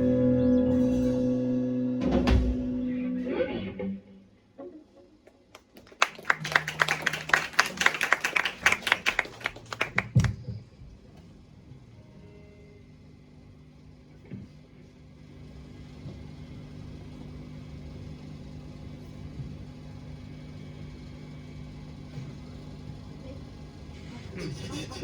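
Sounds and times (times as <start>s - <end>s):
hand clapping: 5.3s - 10.5s.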